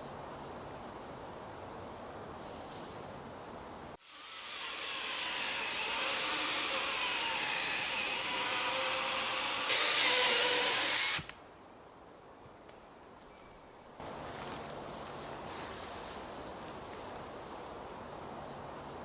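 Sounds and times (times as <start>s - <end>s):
small electric motor whirring: 4.0s - 11.3s.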